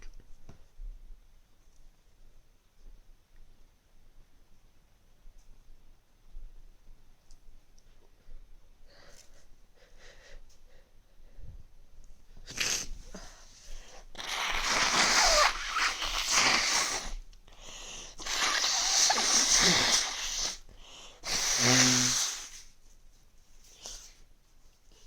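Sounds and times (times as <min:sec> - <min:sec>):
person blowing nose: 0:12.4 - 0:22.7
person sneezing: 0:12.5 - 0:13.5, 0:14.1 - 0:17.2, 0:18.1 - 0:22.6.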